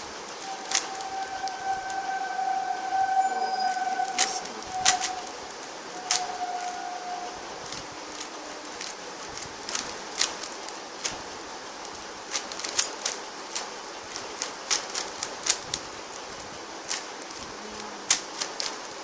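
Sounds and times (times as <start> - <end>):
steady hiss: 0.0 - 19.0
plastic puzzle cube clicking: 7.6 - 9.0, 9.7 - 11.2, 11.8 - 15.9, 16.9 - 19.0.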